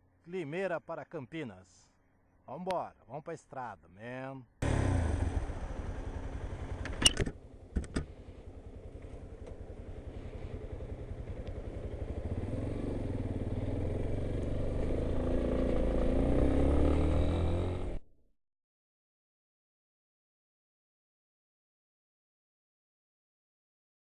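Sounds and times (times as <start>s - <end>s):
motorcycle engine running: 4.6s - 18.0s.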